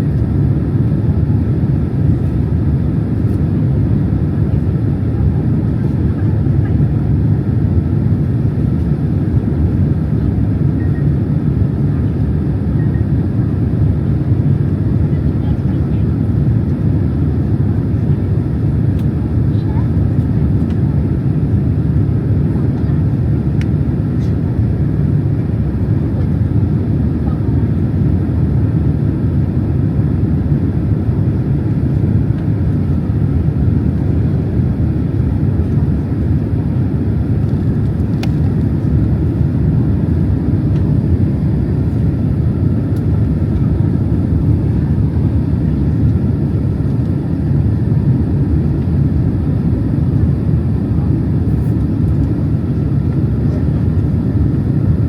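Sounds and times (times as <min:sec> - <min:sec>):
airliner cabin engine rumble: 0:00.0 - 0:55.0.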